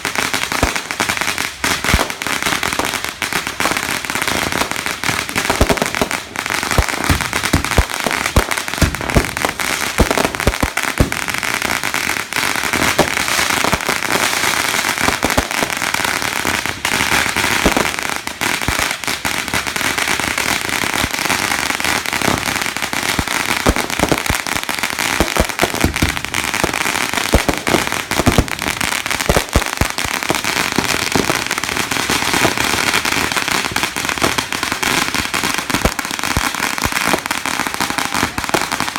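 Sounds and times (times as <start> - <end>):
fireworks crackling and popping: 0.0 - 38.9.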